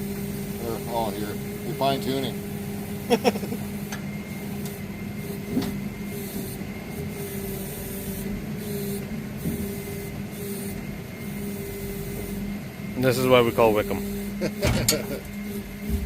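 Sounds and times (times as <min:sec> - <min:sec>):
truck engine and winch whining: 0:00.0 - 0:16.0
metal clank: 0:14.6 - 0:15.1.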